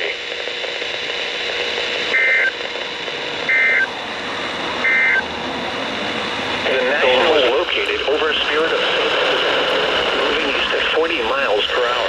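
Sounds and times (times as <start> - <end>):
radio static: 0.0 - 12.0
two-tone digital data squawks: 2.1 - 2.6, 3.5 - 3.9, 4.8 - 5.2.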